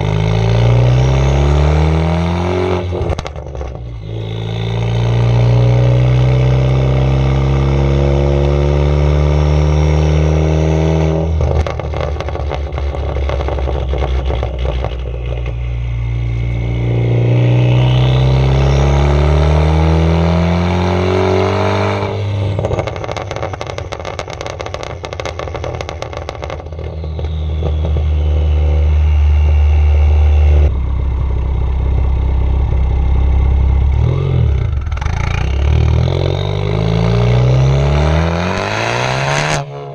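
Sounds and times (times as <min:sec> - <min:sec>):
car engine accelerating hard: 0:00.0 - 0:39.9
exhaust pops and crackles: 0:02.9 - 0:04.0, 0:11.2 - 0:15.9, 0:22.6 - 0:34.1.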